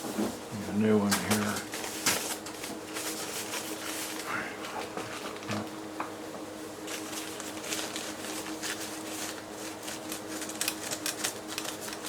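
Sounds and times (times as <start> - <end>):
faint steady hum: 0.0 - 12.0
paper towel rubbing on plastic: 6.9 - 12.0
rapid small clicks: 10.1 - 12.0.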